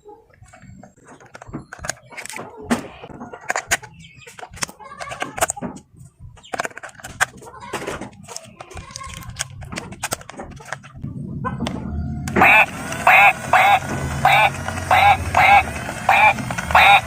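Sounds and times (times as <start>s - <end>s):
small clicks and rattles: 3.4s - 11.0s
bouncy tune with quack-like note: 12.4s - 17.0s.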